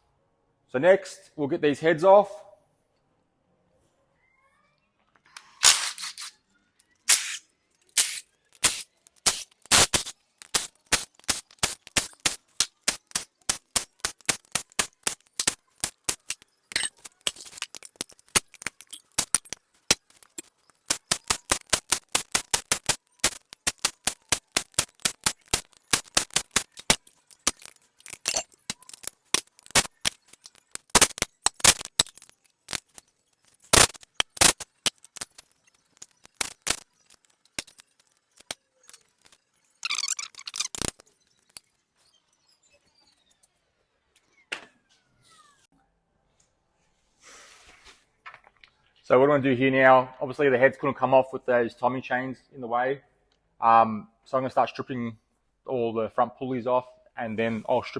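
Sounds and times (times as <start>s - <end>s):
hand tools clicking on metal: 7.1s - 41.6s.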